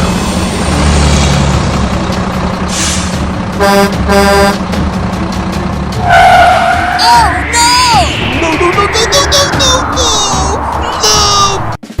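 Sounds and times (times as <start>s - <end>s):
truck engine running: 0.0s - 7.0s
horn honks: 3.6s - 4.6s.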